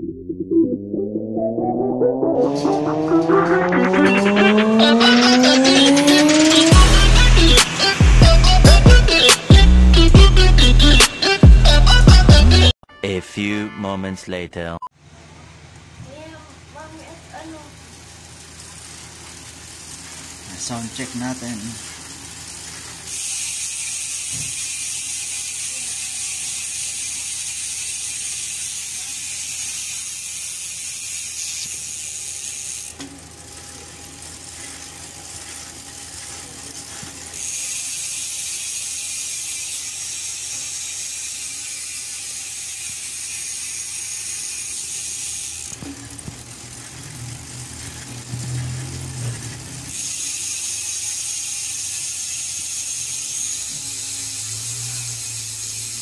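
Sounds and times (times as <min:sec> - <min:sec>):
bicycle hub freewheel clicking: 0:02.4 - 0:12.7, 0:16.1 - 0:56.0.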